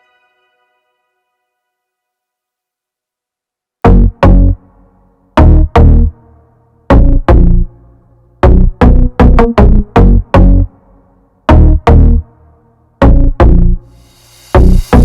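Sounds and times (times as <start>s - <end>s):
drum machine hits: 14.4s - 15.0s.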